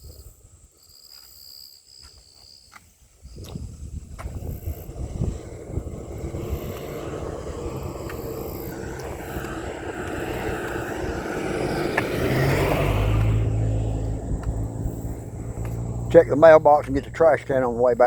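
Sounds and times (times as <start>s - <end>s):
vehicle passing by: 4.0s - 18.0s.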